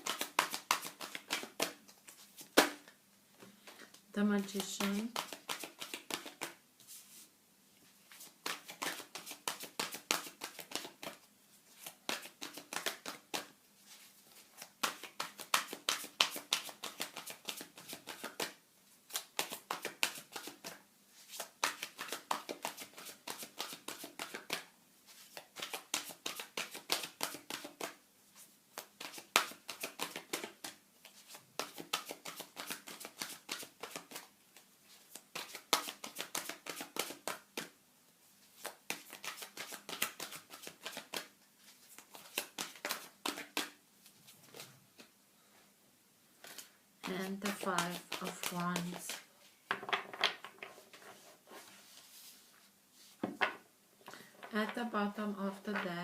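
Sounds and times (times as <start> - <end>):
cards being shuffled: 0.0 - 2.9, 3.7 - 7.2, 8.1 - 28.0, 28.8 - 34.3, 35.0 - 37.7, 38.6 - 43.8, 44.4 - 45.1, 46.4 - 49.3.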